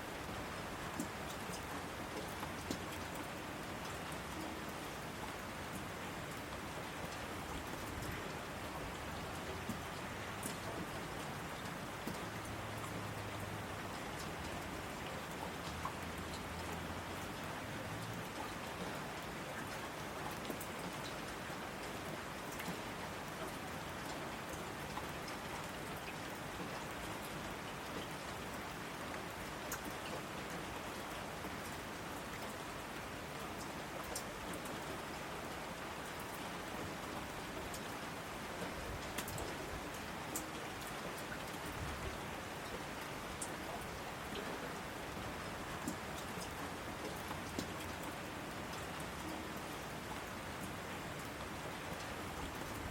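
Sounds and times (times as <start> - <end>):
raindrops ticking on surface: 0.0 - 52.9
steady rain hiss: 0.0 - 52.9.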